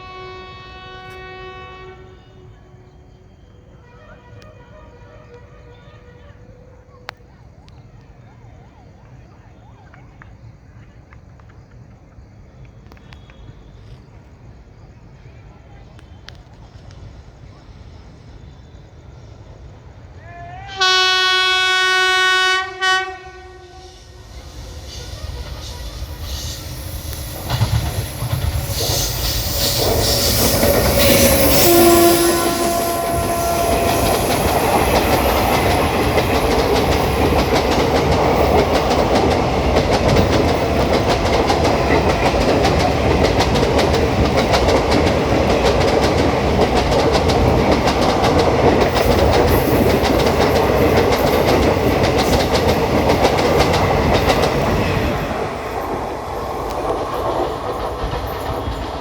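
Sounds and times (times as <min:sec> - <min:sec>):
train horn: 0:00.0 - 0:07.1, 0:20.1 - 0:26.7, 0:28.4 - 0:43.5
train coaches clickety-clack: 0:03.8 - 0:18.3, 0:23.9 - 0:59.0.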